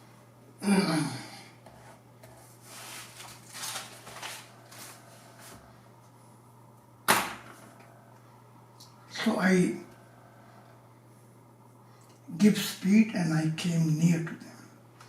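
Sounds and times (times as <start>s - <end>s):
faint steady hum: 0.0s - 15.0s
soft breathing: 10.0s - 12.2s.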